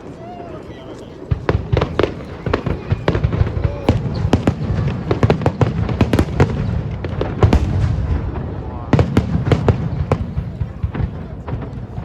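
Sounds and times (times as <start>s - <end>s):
fireworks bangs and crackles: 0.0s - 12.0s
low rumble of booms: 2.9s - 12.0s.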